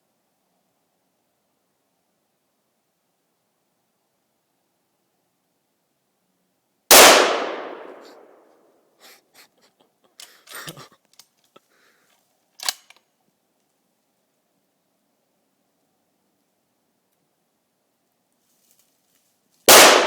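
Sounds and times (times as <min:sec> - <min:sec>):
rifle shot echoing: 0:06.9 - 0:08.2, 0:19.7 - 0:20.0
metallic clicks and clacks: 0:12.6 - 0:13.0.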